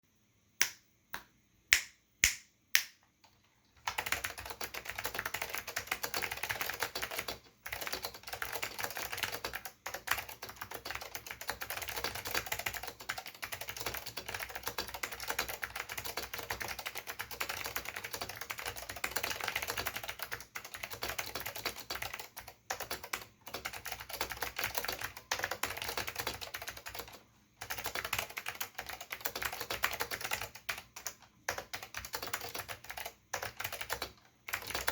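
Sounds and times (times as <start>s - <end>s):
clicky keyboard typing: 2.8s - 34.9s.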